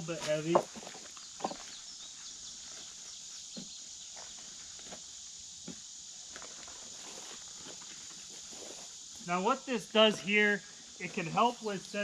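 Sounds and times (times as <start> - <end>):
high insect drone: 0.0 - 12.0
faint bird chirps: 1.1 - 4.7.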